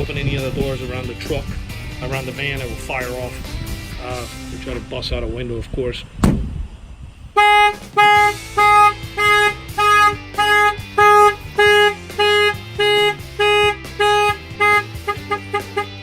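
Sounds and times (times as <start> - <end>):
car alarm honking: 7.4 - 16.0.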